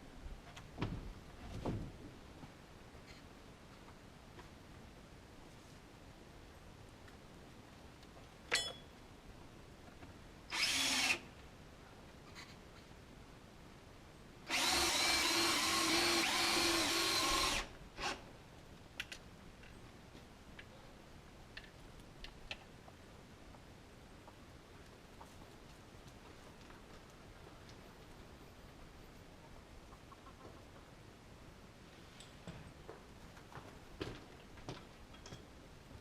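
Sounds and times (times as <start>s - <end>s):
power drill driving fasteners: 10.5s - 11.2s, 14.5s - 18.2s.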